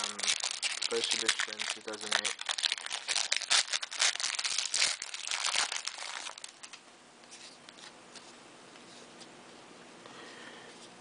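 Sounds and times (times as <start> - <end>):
plastic wrapper crinkling and tearing: 0.0 - 6.8.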